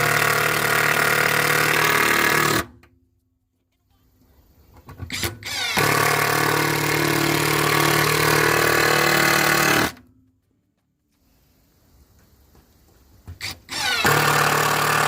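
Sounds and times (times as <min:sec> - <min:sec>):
electric power tool running: 0:00.0 - 0:02.7, 0:05.4 - 0:10.0, 0:13.4 - 0:15.0.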